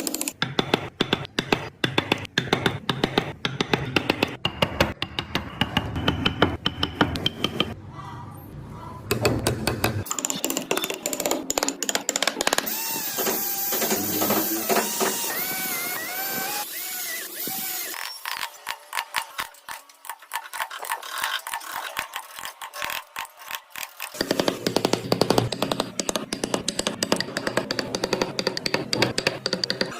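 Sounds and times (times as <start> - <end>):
power tool whine: 12.7 - 18.2.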